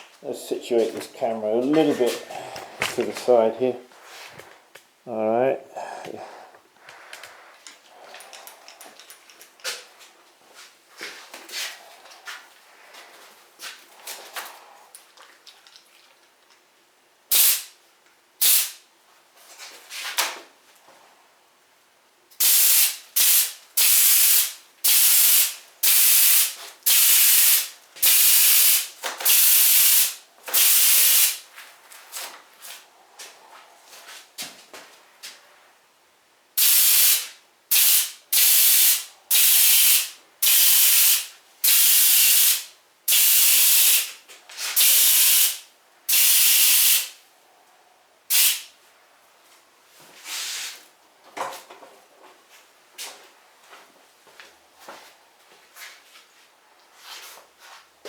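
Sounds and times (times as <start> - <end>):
spray gun hissing: 17.3 - 17.7, 18.4 - 18.8, 22.4 - 31.4, 36.6 - 44.1, 44.8 - 47.1, 48.3 - 48.6.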